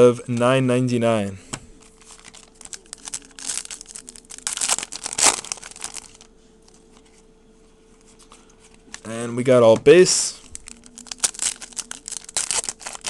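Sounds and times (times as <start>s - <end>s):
wrapper and cards crinkling: 1.8s - 7.1s, 10.3s - 13.0s.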